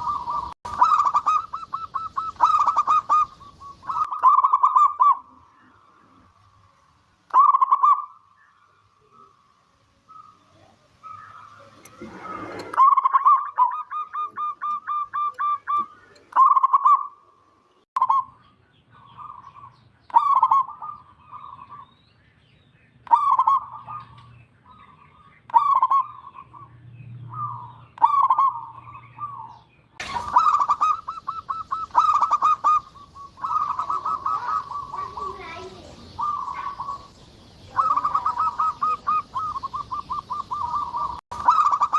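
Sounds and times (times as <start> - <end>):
dove cooing: 0.0 - 6.4, 7.3 - 8.2, 10.0 - 17.2, 20.2 - 21.8, 23.1 - 24.8, 25.6 - 26.6, 27.4 - 41.9.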